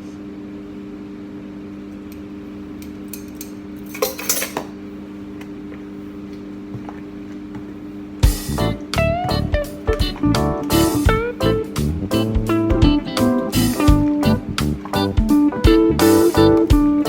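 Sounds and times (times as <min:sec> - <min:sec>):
steady low hum: 0:00.0 - 0:17.0
music: 0:08.2 - 0:17.0.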